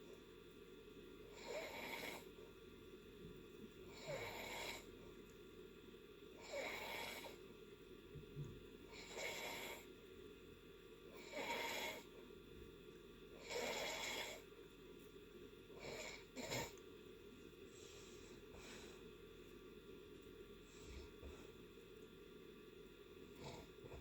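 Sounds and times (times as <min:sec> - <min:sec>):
person snoring faintly: 0:03.9 - 0:04.9, 0:06.4 - 0:07.4, 0:11.2 - 0:12.1, 0:13.4 - 0:14.5.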